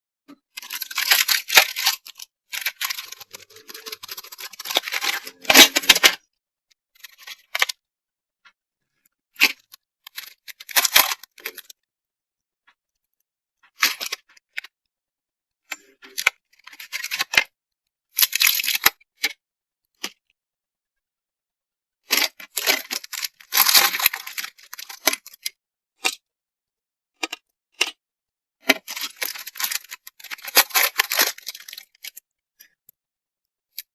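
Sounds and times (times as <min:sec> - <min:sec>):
packaging rustling and tearing: 0:00.6 - 0:06.2, 0:10.1 - 0:11.7, 0:22.2 - 0:25.5, 0:28.8 - 0:32.2.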